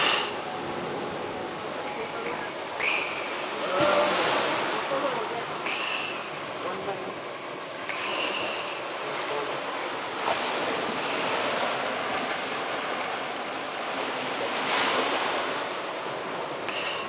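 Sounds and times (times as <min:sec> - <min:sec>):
ocean surf washing onto beach: 0:00.0 - 0:17.0.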